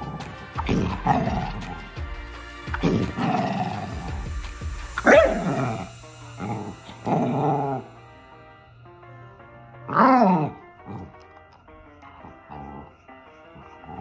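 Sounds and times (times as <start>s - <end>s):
dog growling: 0.0s - 2.0s, 2.7s - 4.4s, 5.0s - 8.0s, 9.8s - 11.3s, 12.1s - 14.0s
background music: 0.0s - 14.0s
dog barking: 5.0s - 5.6s.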